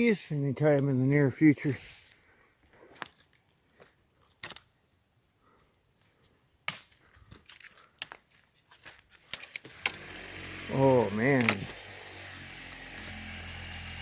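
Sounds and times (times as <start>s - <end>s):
twigs cracking: 6.7s - 14.0s
footsteps on twigs and leaves: 6.8s - 14.0s.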